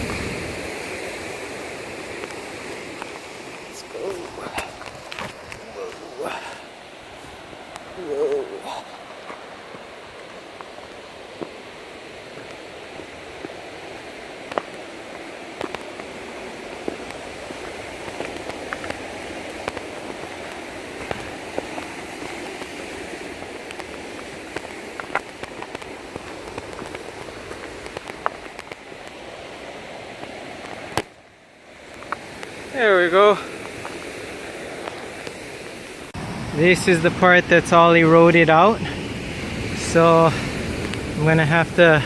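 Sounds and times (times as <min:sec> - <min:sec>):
bike tyres rolling on gravel: 0:00.0 - 0:31.1
stones clicking and bike rattle: 0:02.1 - 0:06.0, 0:14.4 - 0:29.2.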